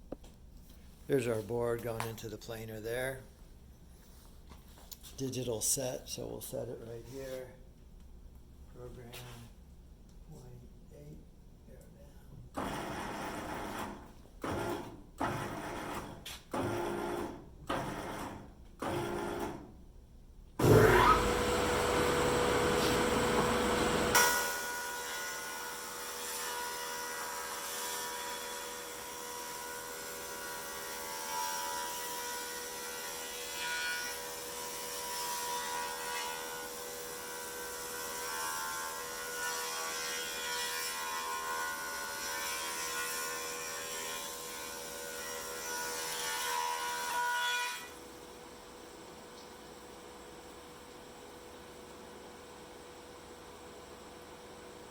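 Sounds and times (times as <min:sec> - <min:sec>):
planer humming: 0:20.6 - 0:24.7
short motor bursts: 0:20.6 - 0:24.7
planer cutting wood: 0:20.6 - 0:47.9.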